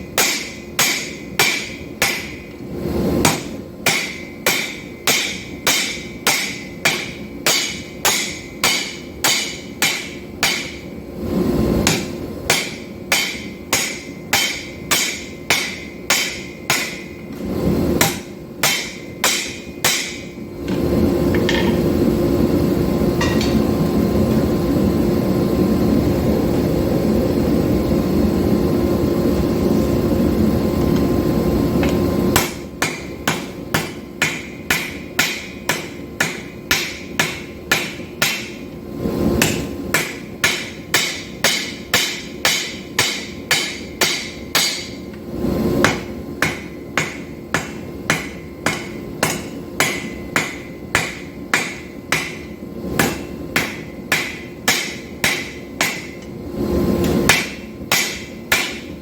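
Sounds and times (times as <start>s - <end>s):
hammer blows on steel on anvil: 11.9s - 17.2s, 18.0s - 20.4s.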